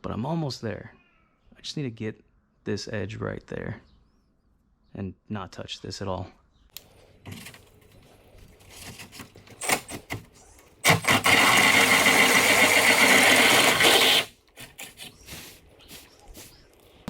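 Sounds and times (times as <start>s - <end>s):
power tool whining and grinding: 10.7s - 14.4s.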